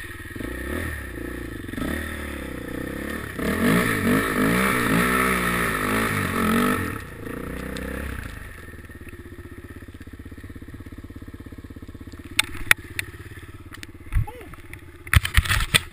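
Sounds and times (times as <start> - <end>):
quad engine revving and idling: 0.0 - 15.9
sharp clicks: 12.0 - 15.9.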